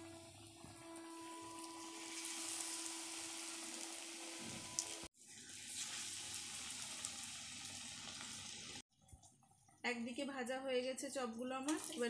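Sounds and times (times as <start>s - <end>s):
food deep-frying in oil: 0.0s - 8.8s.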